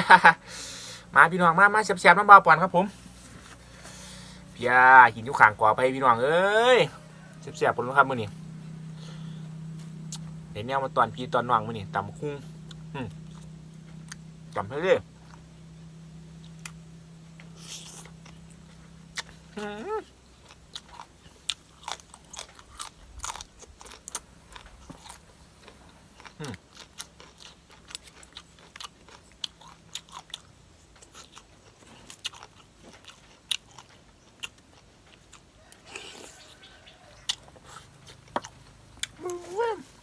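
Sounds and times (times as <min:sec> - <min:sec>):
person chewing crunchy food: 0:07.2 - 0:40.0.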